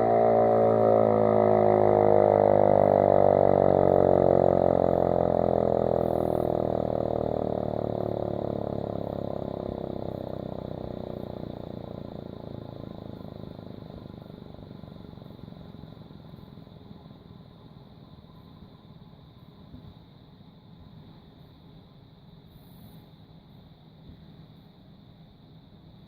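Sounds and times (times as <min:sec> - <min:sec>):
air-raid siren winding down: 0:00.0 - 0:11.4.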